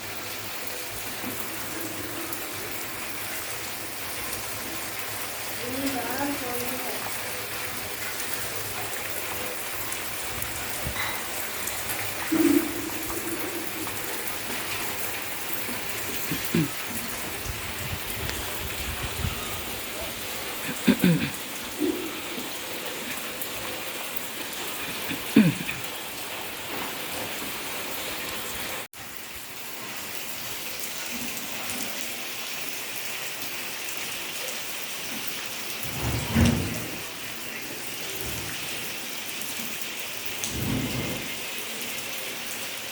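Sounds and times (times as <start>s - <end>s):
steady rain falling: 0.0s - 42.9s.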